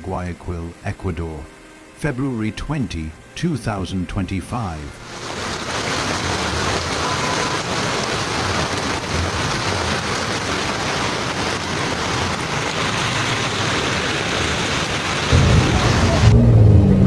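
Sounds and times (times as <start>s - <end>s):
heavy rain pouring: 0.0s - 17.0s
deep low rumble: 15.3s - 17.0s.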